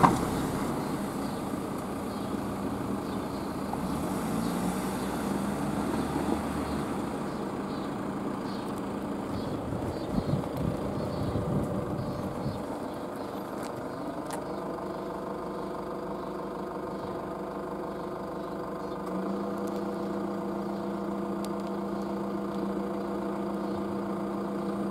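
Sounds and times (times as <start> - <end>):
vehicle engine idling: 0.0 - 24.9.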